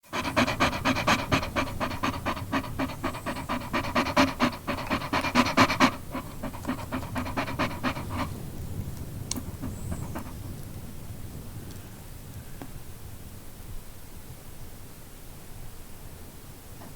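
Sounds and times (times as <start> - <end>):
dog panting: 0.0 - 8.6, 9.3 - 10.6.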